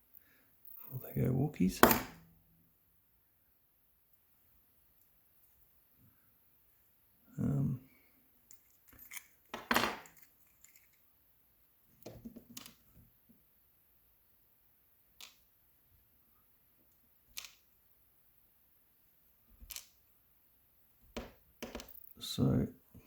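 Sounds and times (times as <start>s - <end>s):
small metal lock parts clicking: 8.5s - 11.0s.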